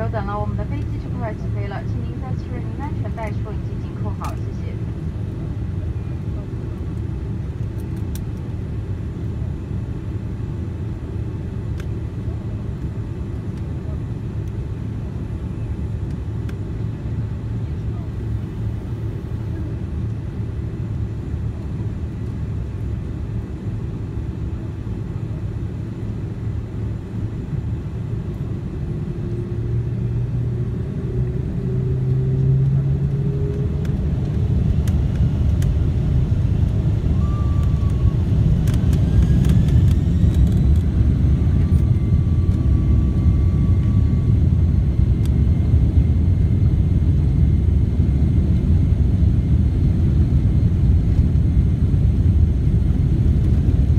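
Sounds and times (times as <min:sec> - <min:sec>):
jet engines spooling up: 0:29.3 - 0:46.8.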